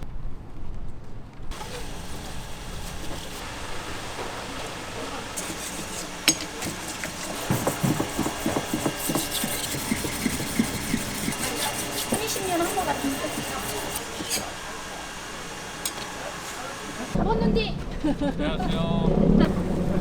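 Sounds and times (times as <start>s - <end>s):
knife scraping on cutting board: 1.6s - 14.7s.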